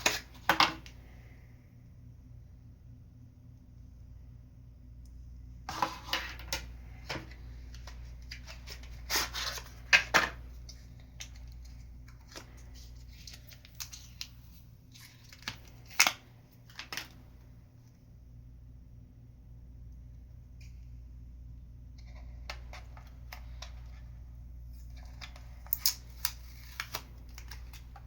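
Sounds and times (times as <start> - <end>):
hands handling packaging: 0.0 - 1.0, 5.7 - 17.4, 22.0 - 28.0.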